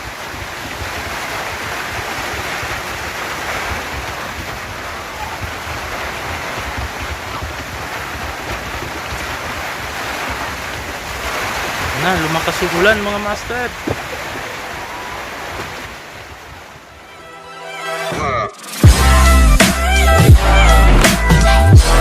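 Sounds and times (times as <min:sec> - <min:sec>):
wind gusting on microphone: 0:00.0 - 0:17.0
heavy rain pouring: 0:00.0 - 0:17.2.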